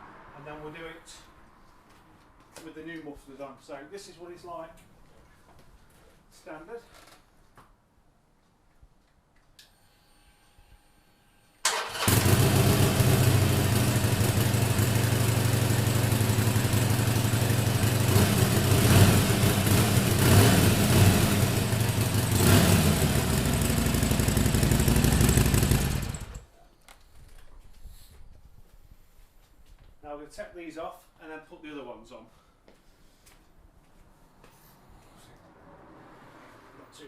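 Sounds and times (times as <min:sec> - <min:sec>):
motorcycle engine revving: 0:11.7 - 0:26.5.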